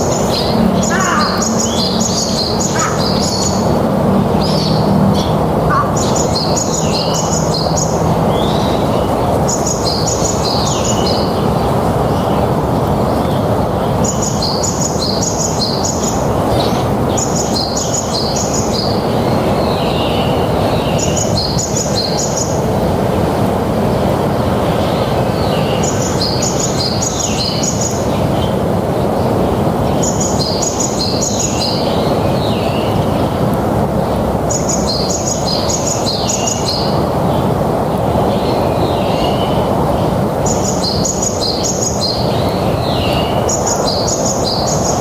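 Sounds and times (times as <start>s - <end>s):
songbird chirping: 0.0s - 11.5s
steady rushing noise: 0.0s - 45.0s.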